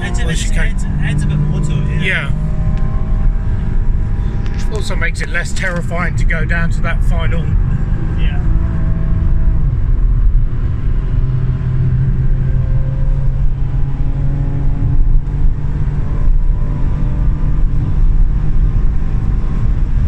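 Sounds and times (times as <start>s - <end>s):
car engine at high revs: 0.0s - 20.0s
road and tyre noise: 0.0s - 20.0s.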